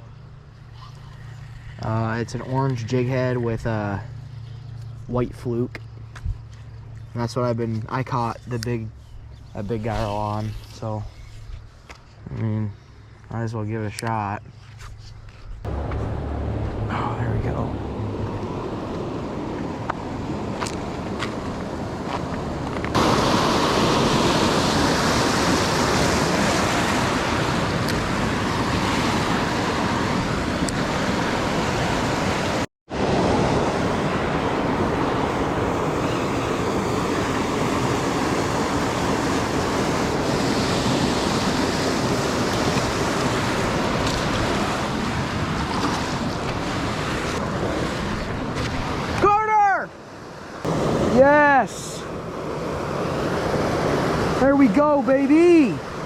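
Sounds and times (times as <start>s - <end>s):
wind buffeting microphone: 15.5s - 49.2s
river water rushing: 15.7s - 56.0s.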